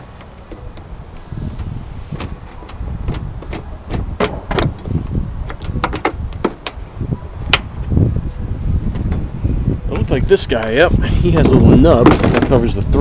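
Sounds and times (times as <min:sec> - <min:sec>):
sharp clicks and knocks: 0:00.2 - 0:06.8.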